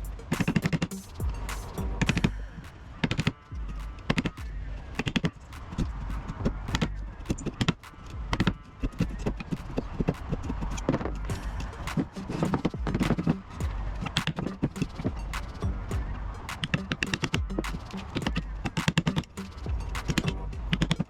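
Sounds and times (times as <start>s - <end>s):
low steady hum: 0.0s - 2.9s.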